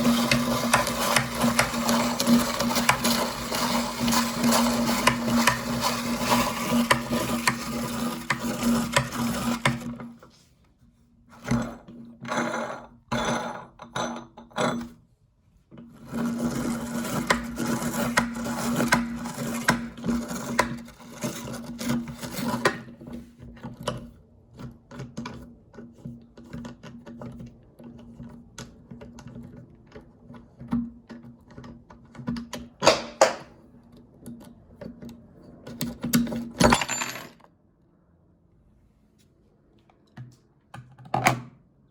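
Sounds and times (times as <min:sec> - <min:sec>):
meat grinder crunching candy: 0:00.0 - 0:10.0, 0:15.9 - 0:22.8.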